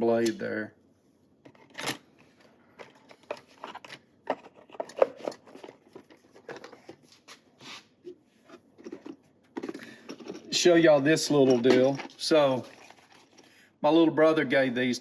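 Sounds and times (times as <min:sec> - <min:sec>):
small objects rummaged through: 0:08.5 - 0:13.5.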